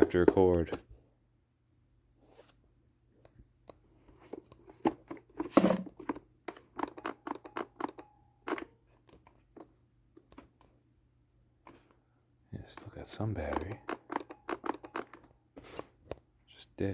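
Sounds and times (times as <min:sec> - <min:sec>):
chainsaw handling clicks and rattles: 0:04.8 - 0:09.3, 0:12.7 - 0:15.3.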